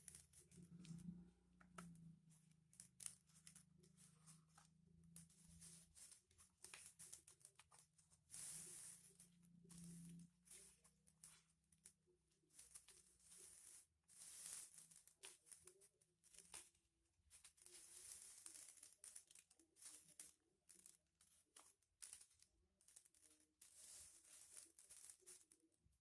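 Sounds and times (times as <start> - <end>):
foil paper crinkling: 2.0 - 26.0.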